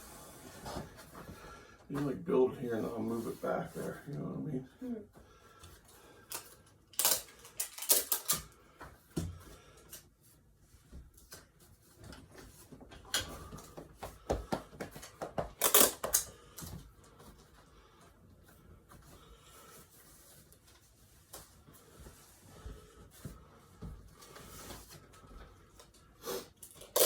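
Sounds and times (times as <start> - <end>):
toy cars clicking and rattling: 6.3 - 8.5, 26.6 - 27.0.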